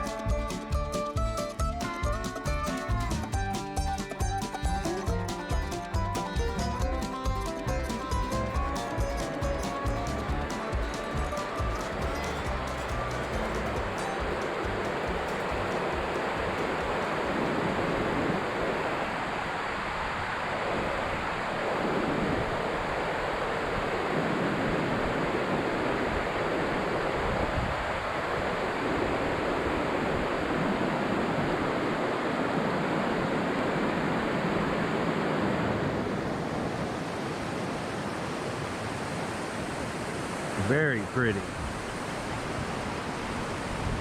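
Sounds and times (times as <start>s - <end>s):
creek water flowing: 0.0s - 44.0s
wind rumble on microphone: 9.4s - 40.5s, 41.5s - 44.0s.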